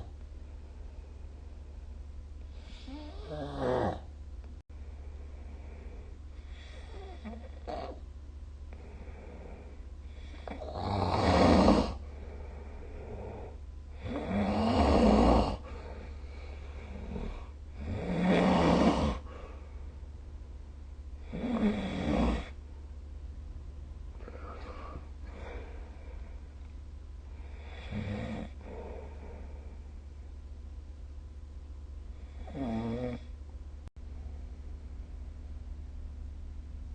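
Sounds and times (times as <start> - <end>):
steady low hum: 0.0 - 36.9
person snoring: 2.6 - 4.1, 5.6 - 8.0, 8.7 - 19.6, 21.2 - 22.6, 27.4 - 29.8, 32.2 - 33.3.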